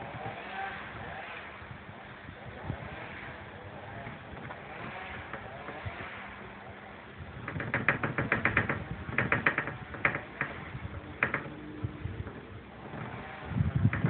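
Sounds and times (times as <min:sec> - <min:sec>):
loose objects rattling: 0:07.3 - 0:14.0.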